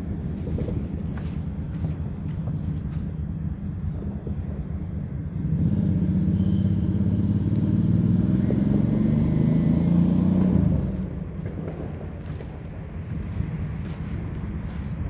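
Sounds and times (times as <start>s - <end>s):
motor vehicle passing by: 5.4s - 14.8s.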